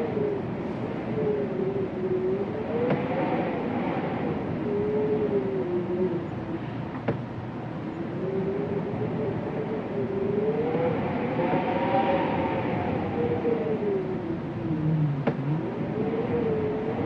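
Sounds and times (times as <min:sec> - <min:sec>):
wind moaning: 0:00.0 - 0:17.0.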